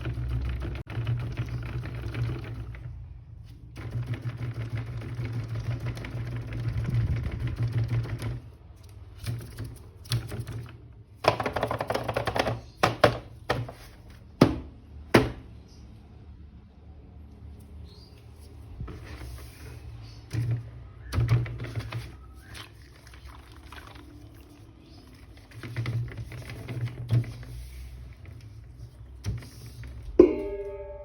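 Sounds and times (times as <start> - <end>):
hard plastic clattering: 11.2 - 15.4.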